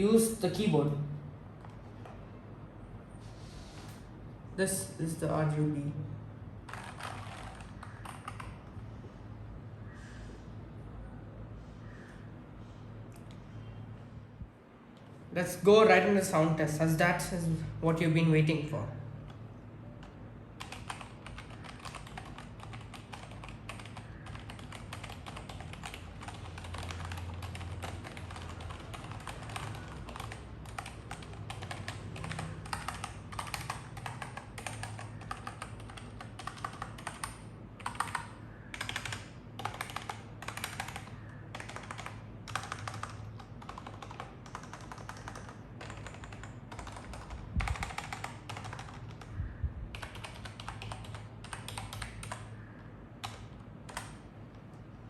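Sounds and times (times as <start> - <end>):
keyboard typing: 6.6 - 8.8, 19.2 - 52.6, 53.2 - 54.9.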